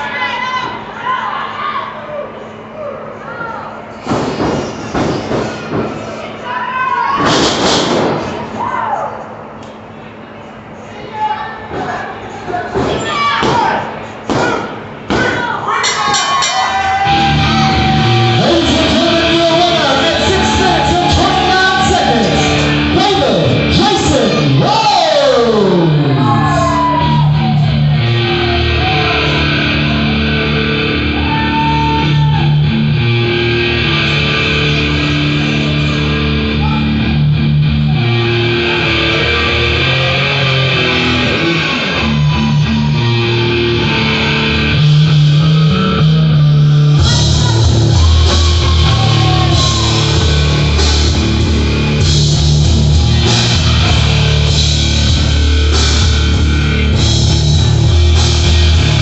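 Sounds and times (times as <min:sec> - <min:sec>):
distorted guitar and bass: 0:16.6 - 0:59.0
drum kit and cymbals: 0:47.0 - 0:59.0.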